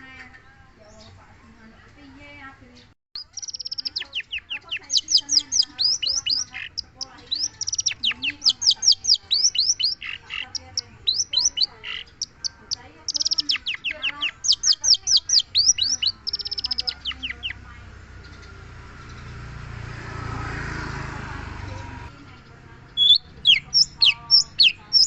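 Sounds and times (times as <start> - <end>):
bird whistled song: 3.2 - 17.6, 23.0 - 25.0.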